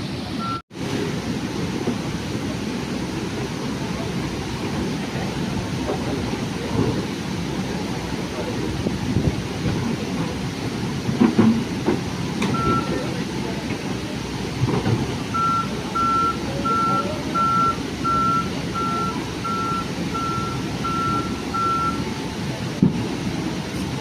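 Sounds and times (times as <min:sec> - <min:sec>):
low engine rumble: 0:00.0 - 0:24.0
reversing alarm beeping: 0:00.4 - 0:00.6, 0:12.5 - 0:13.1, 0:15.3 - 0:22.2.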